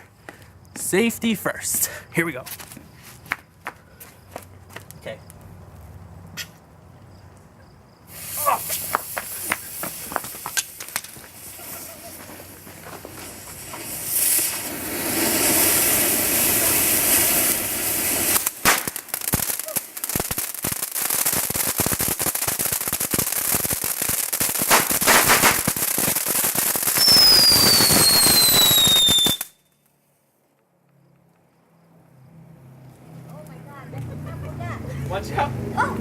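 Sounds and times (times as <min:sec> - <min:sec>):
fireworks fountain hissing: 0:08.0 - 0:29.5
crackling pops: 0:08.2 - 0:16.0, 0:18.2 - 0:29.6
falling whistle: 0:27.0 - 0:29.8.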